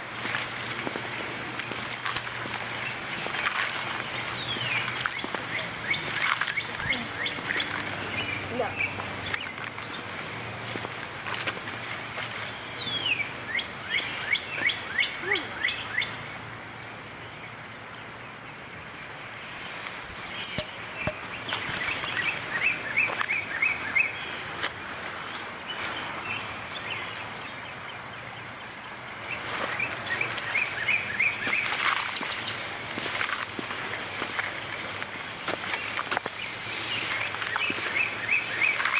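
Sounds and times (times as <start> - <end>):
stream babbling: 0.0 - 38.9.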